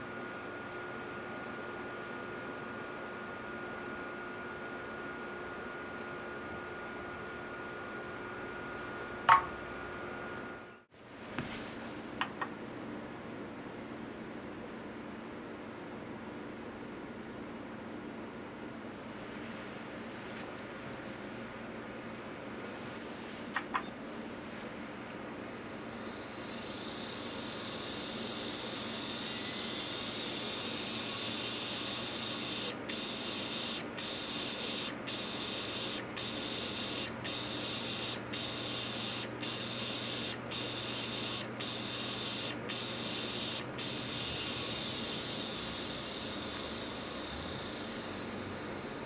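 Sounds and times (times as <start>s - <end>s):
hard disk high-pitched hissing: 25.2s - 49.0s.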